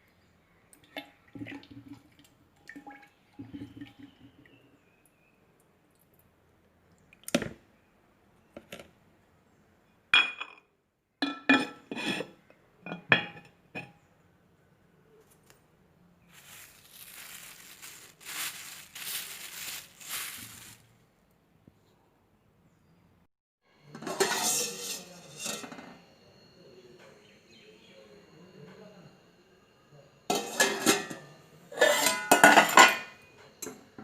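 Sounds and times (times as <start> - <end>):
rustling noise: 16.3 - 21.0.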